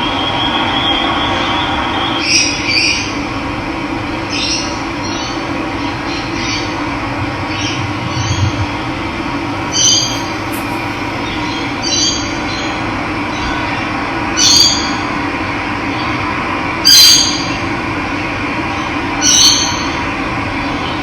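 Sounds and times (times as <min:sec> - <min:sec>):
bird short high call: 0:09.6 - 0:12.1.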